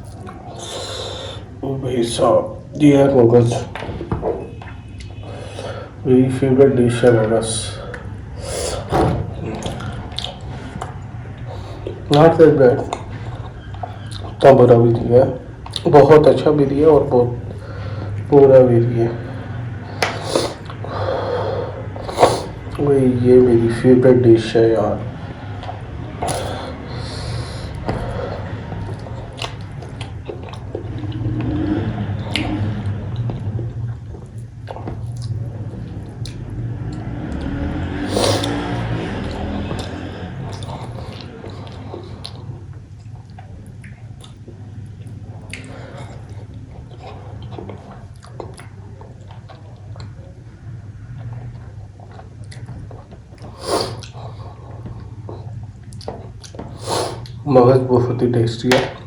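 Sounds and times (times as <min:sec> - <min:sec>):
man chewing with wet mouth sounds: 0:00.0 - 0:01.6, 0:04.4 - 0:06.0, 0:07.8 - 0:14.5, 0:15.5 - 0:16.1, 0:19.3 - 0:22.8, 0:25.1 - 0:57.4
steady low hum: 0:00.0 - 0:59.0.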